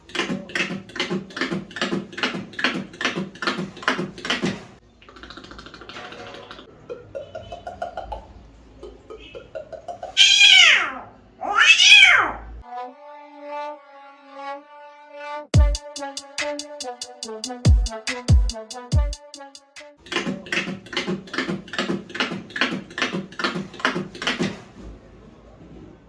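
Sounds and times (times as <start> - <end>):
cat meowing: 10.2 - 12.6.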